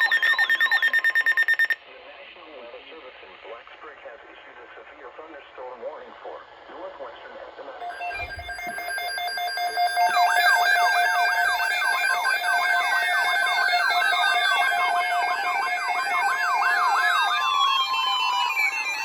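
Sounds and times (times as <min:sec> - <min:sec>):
siren-like sweep: 0:00.0 - 0:01.8, 0:07.8 - 0:19.0
steady electronic alert tones: 0:00.0 - 0:01.8, 0:07.8 - 0:11.8.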